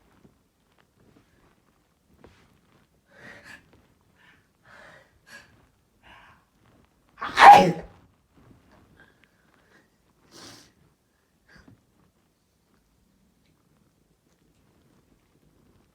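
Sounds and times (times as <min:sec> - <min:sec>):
person sneezing: 0:07.2 - 0:07.9.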